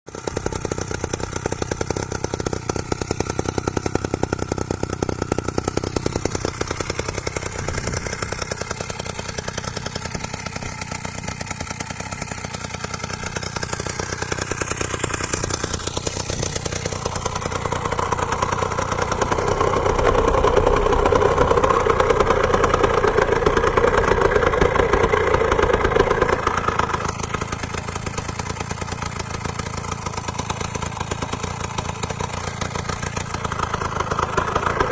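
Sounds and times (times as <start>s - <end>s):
two-stroke moped engine buzzing: 0.1s - 34.9s.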